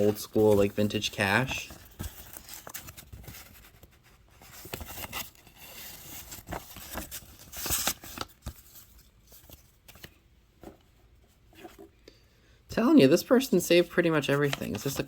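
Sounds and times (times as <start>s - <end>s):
paper rustling and crinkling: 0.0s - 11.9s, 14.2s - 15.0s.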